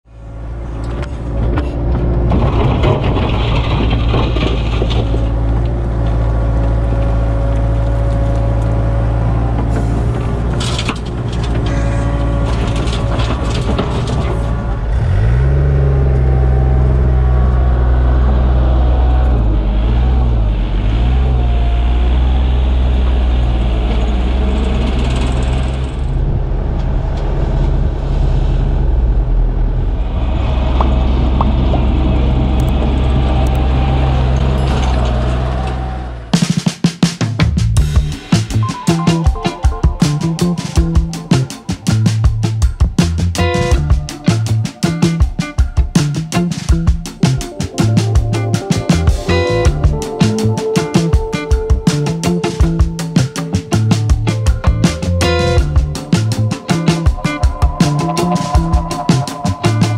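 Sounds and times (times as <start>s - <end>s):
excavator diesel engine running: 0.1s - 36.4s, 37.8s - 59.9s
metallic clatter and knocks: 0.9s - 6.2s, 9.5s - 14.8s.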